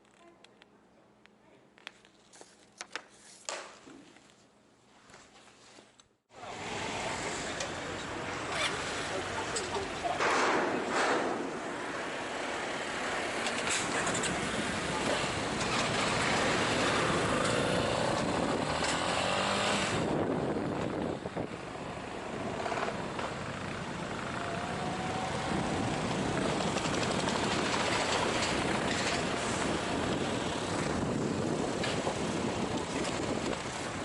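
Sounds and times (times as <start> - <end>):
vehicle running: 6.4 - 34.0
wind noise on microphone: 13.3 - 34.0.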